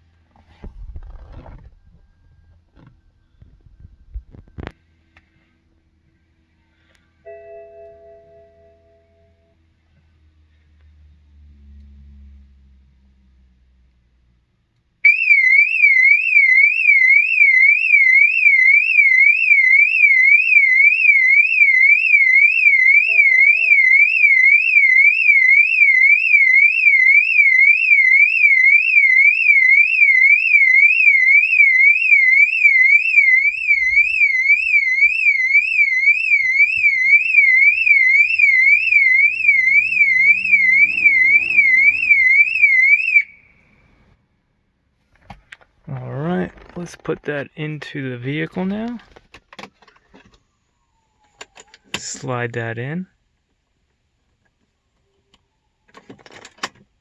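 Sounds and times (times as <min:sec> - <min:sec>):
electronic siren warbling: 0:18.6 - 0:43.6.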